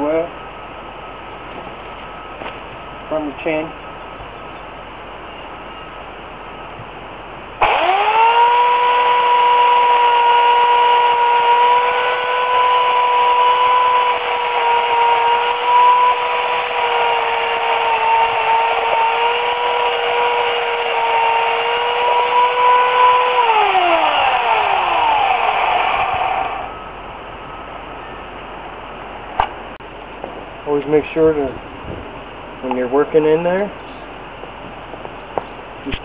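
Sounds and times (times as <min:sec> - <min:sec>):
electric chainsaw whining: 0:07.6 - 0:26.8.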